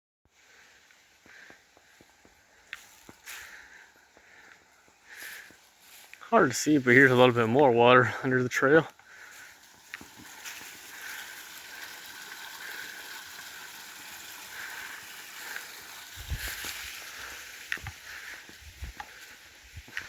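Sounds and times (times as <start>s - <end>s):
creek trickling: 0.3s - 20.0s
footsteps crunching on trail: 0.5s - 11.4s, 15.4s - 20.0s.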